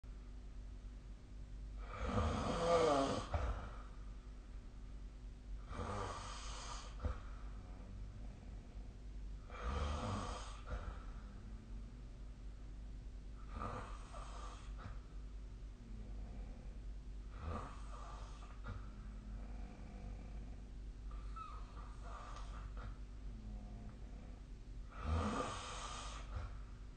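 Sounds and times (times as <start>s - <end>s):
person snoring: 1.8s - 3.8s, 5.6s - 8.7s, 9.5s - 11.7s, 13.4s - 15.0s, 15.8s - 22.6s, 23.4s - 26.5s.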